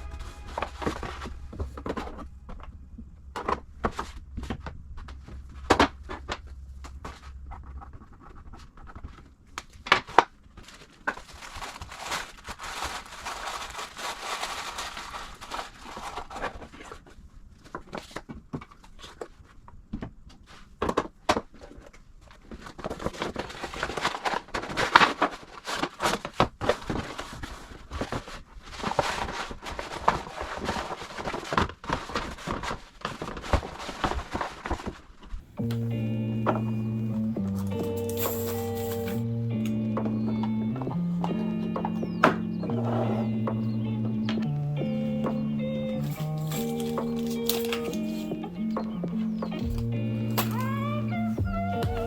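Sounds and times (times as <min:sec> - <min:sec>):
paper rustling: 0:03.4 - 0:19.5, 0:20.4 - 0:39.2, 0:46.0 - 0:48.4.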